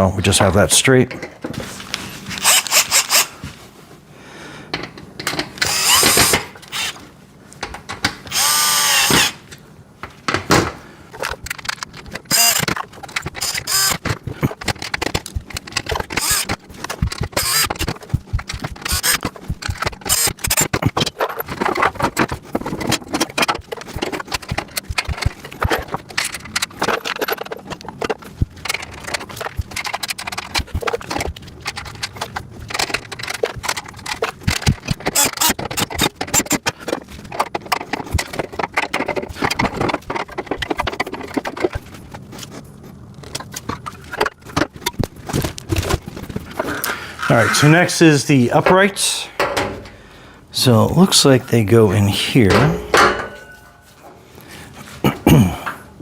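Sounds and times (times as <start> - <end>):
power drill whining: 2.3 - 3.3, 5.6 - 7.0, 8.3 - 9.4, 12.3 - 12.7, 13.4 - 14.0, 16.1 - 16.5, 17.3 - 17.8, 18.9 - 19.2
metallic clicks and rattles of screws: 11.1 - 42.0.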